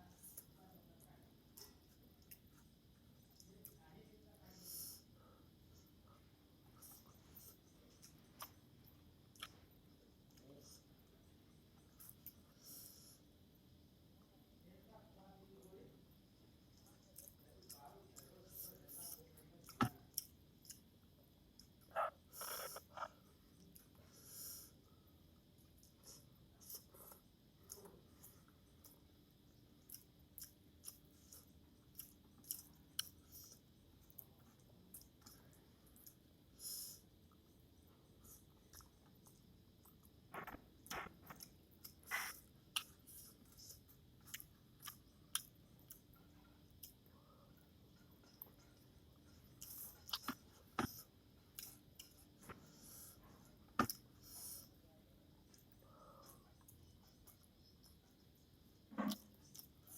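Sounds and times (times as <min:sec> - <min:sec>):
person chewing: 0:06.8 - 0:09.7, 0:16.8 - 0:21.0, 0:21.6 - 0:24.0, 0:25.6 - 0:36.3, 0:38.2 - 0:47.2, 0:47.9 - 0:54.7, 0:55.4 - 0:59.9.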